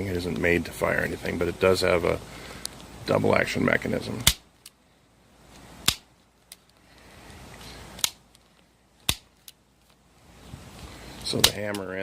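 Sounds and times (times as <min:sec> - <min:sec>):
pistol mechanism clicks: 0:04.2 - 0:04.8, 0:05.8 - 0:06.8, 0:08.0 - 0:09.6.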